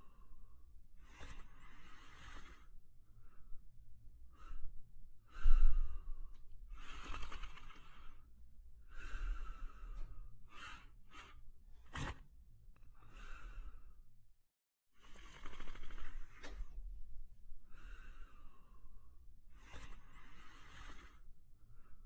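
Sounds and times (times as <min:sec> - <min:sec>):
dog snoring: 0:01.0 - 0:02.7, 0:15.0 - 0:16.7, 0:19.5 - 0:21.2.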